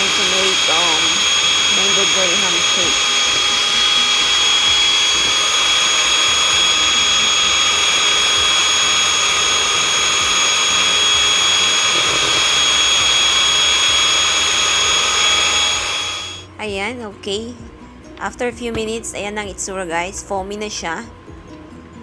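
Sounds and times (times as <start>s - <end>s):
electric hand mixer whining: 0.0s - 16.5s.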